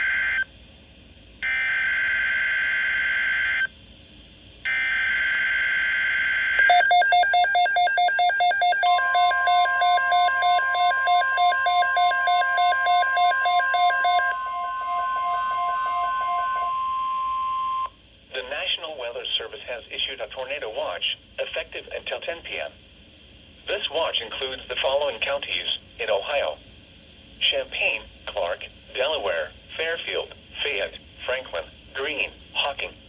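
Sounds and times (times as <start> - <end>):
steady warning alarm tone: 4.7 - 17.9
rapid beeping: 6.6 - 16.9.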